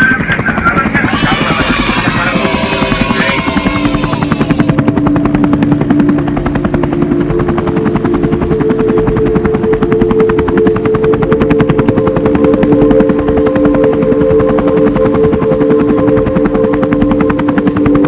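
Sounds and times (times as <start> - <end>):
boat engine chugging: 1.0 - 4.7.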